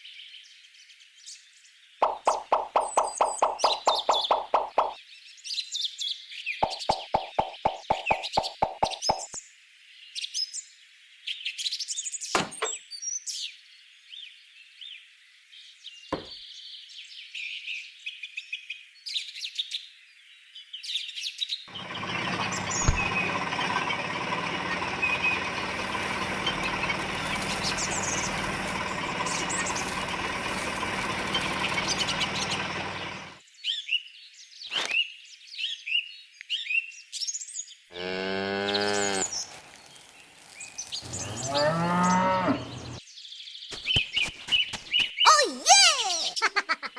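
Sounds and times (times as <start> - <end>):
birds chirping: 2.0 - 5.0, 6.6 - 9.4, 21.7 - 33.4, 40.9 - 43.0, 43.7 - 46.9
sharp clicks: 2.0 - 5.0, 6.6 - 9.3
cow mooing: 37.9 - 39.3, 41.1 - 43.0.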